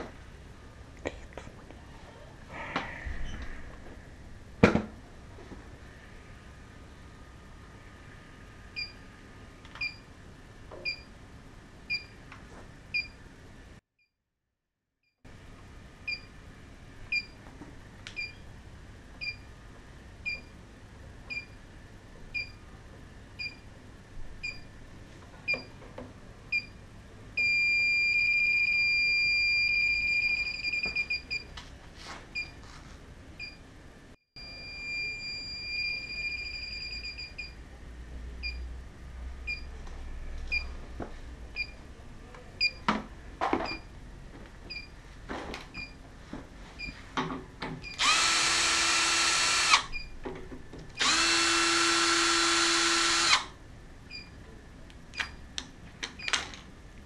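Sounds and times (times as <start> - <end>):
leak detector beeping: 27.4 - 31.5, 34.4 - 37.6.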